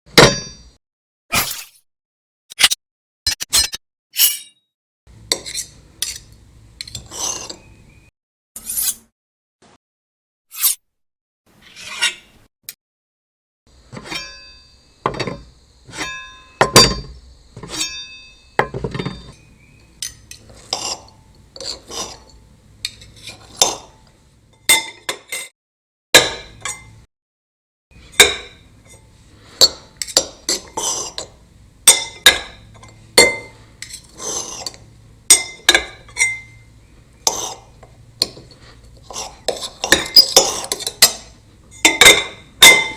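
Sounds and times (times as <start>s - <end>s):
knife blade strikes and scrapes: 0.2s - 0.7s, 1.3s - 1.8s, 2.5s - 7.7s, 8.6s - 9.1s, 10.5s - 10.8s, 11.7s - 12.3s, 13.9s - 24.1s, 26.2s - 27.0s, 28.0s - 42.9s.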